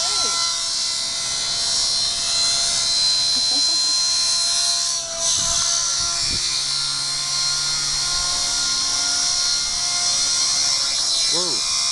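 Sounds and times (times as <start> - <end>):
rc helicopter motor whine: 0.0 - 11.9
wind buffeting microphone: 5.1 - 10.8.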